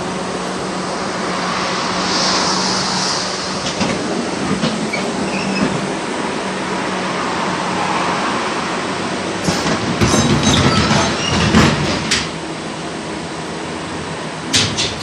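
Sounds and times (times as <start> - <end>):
steady low hum: 0.0 - 7.4
high hiss: 0.0 - 7.8
tram wheels rumbling on rails: 0.0 - 15.0
faint wheel squeals: 4.9 - 5.9
wheels knocking over rail joints: 9.4 - 12.4.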